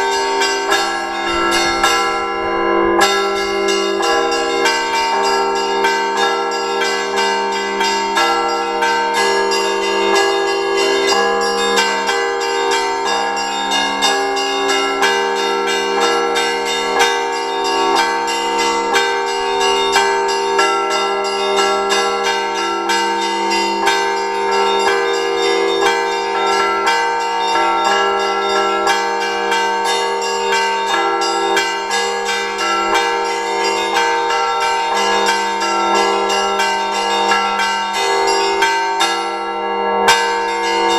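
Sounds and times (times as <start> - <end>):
large bells ringing: 0.0 - 40.9.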